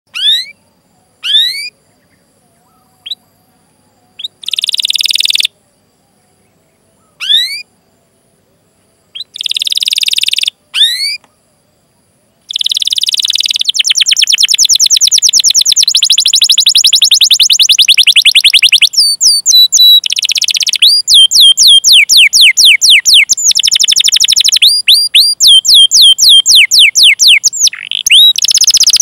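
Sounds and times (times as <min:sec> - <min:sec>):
canary rolling trill: 0:12.5 - 0:29.0
canary rising whistles: 0:12.6 - 0:29.0.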